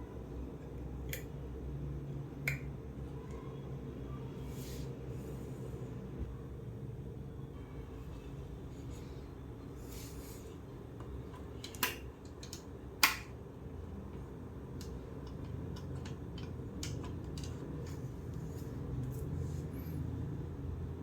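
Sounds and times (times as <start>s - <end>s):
steady low hum: 0.0s - 21.0s
plastic parts clicking and snapping: 11.0s - 13.3s, 14.8s - 18.0s.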